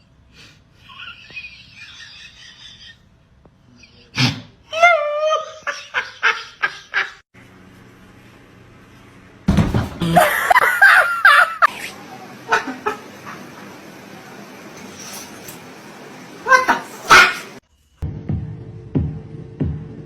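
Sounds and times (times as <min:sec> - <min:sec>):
people laughing: 0:00.8 - 0:03.0, 0:05.4 - 0:07.2, 0:10.0 - 0:13.8.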